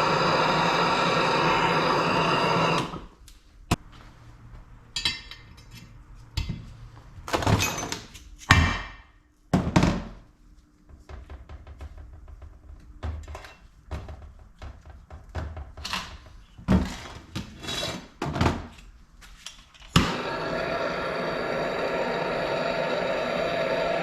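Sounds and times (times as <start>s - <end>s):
heat gun running: 0.0s - 3.1s, 20.0s - 24.0s.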